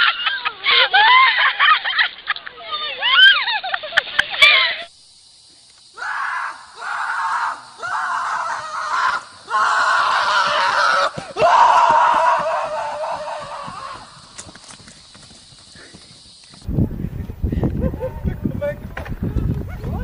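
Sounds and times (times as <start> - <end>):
loud hoarse screams: 5.9 - 14.2.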